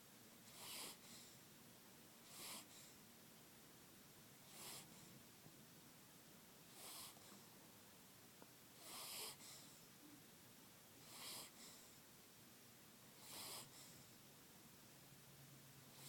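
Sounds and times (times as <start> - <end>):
soft hissy snores: 0.0 - 1.5, 2.2 - 3.1, 4.4 - 5.3, 6.6 - 7.6, 8.7 - 10.2, 11.0 - 12.1, 13.1 - 14.3.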